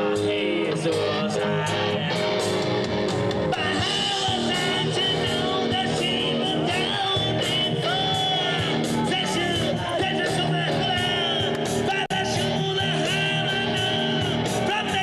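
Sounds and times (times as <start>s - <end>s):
live rock band playing: 0.0s - 15.0s
person singing: 0.0s - 15.0s.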